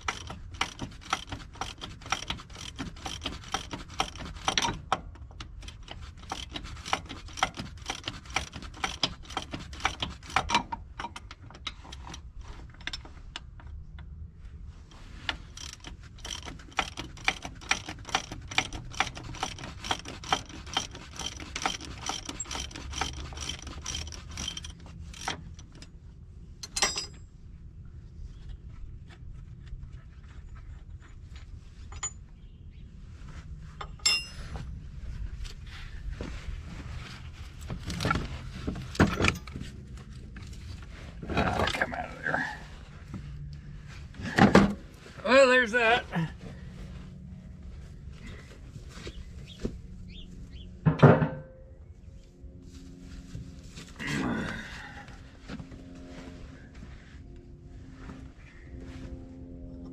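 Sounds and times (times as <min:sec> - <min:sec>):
ratchet wrench clicking: 0:00.0 - 0:11.2, 0:15.5 - 0:25.7.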